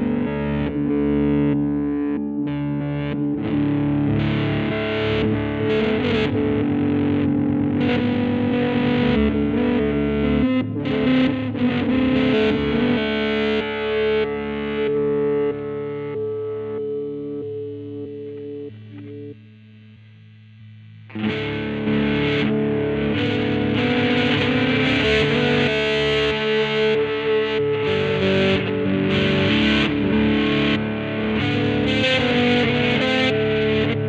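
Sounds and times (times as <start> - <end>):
distorted electric guitar chords: 0.0 - 34.0.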